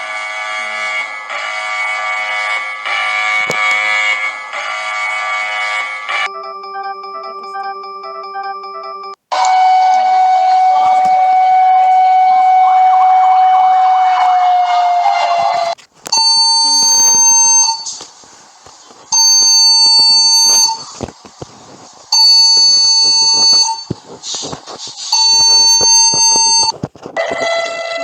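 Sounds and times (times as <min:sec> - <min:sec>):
lower alarm tone: 0:01.4 - 0:15.6, 0:25.2 - 0:26.7
long alarm beeps: 0:06.1 - 0:14.0, 0:16.1 - 0:18.0, 0:19.1 - 0:20.9, 0:22.1 - 0:23.9, 0:25.1 - 0:26.7.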